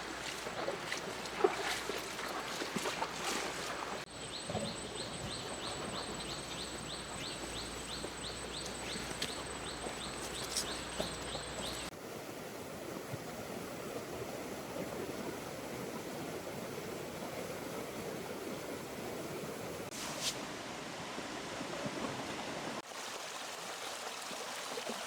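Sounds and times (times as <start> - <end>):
river water rushing: 0.0 - 4.8.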